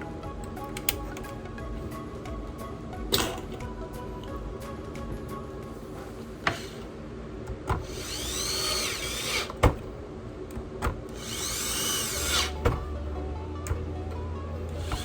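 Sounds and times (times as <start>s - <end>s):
electric screwdriver whirring: 7.7s - 9.6s, 11.1s - 12.8s, 14.7s - 15.0s.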